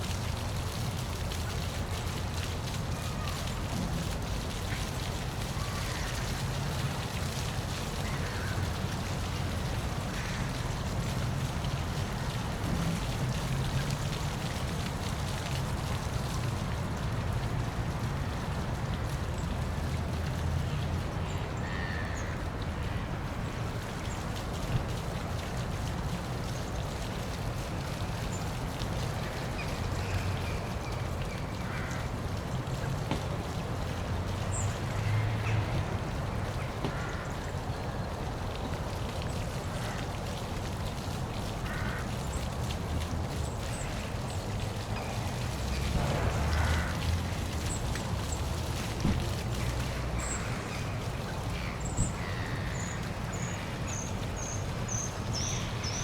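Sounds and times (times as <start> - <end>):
waterfall rushing: 44.2 - 53.8.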